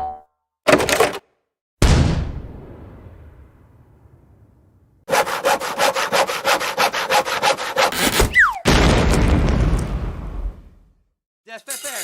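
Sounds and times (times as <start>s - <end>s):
hand saw cutting wood: 5.1s - 8.4s
short falling whistle: 8.3s - 8.7s.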